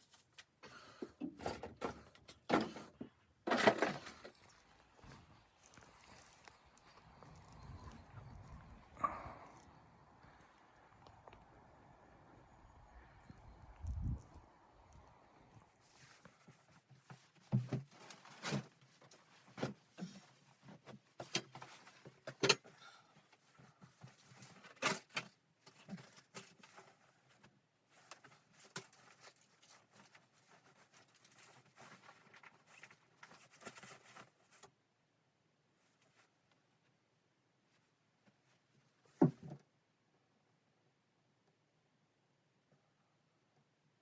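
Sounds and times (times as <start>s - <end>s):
soft rustling: 15.6s - 34.8s, 35.8s - 39.4s.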